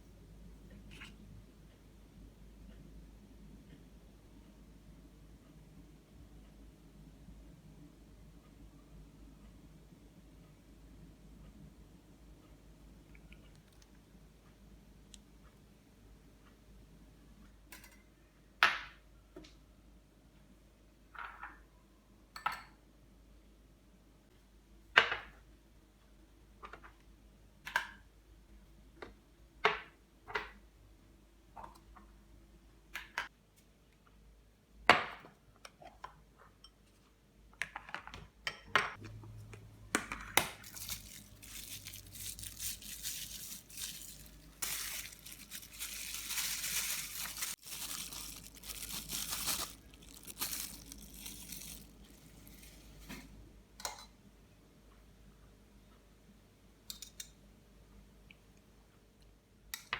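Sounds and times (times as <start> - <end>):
crinkling and rustling: 40.5 - 53.4.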